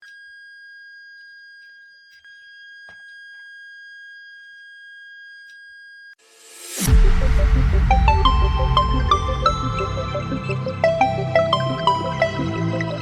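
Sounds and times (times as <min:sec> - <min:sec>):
rising whoosh: 0:06.3 - 0:12.2.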